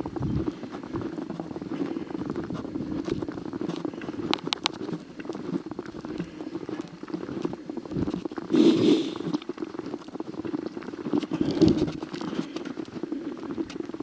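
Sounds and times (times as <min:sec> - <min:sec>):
footsteps crunching in snow: 0:00.0 - 0:14.0
snow squeaks: 0:08.0 - 0:09.3.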